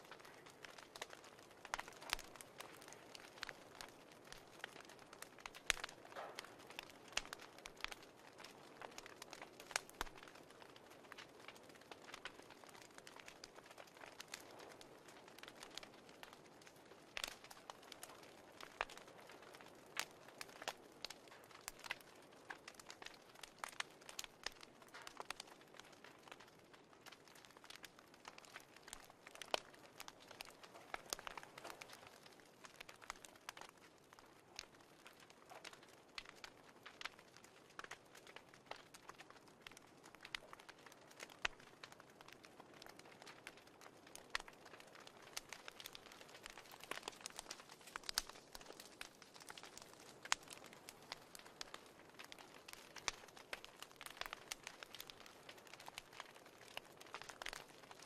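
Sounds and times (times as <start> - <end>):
fireplace crackling: 0.0 - 58.0
soft steady hiss: 0.0 - 58.0.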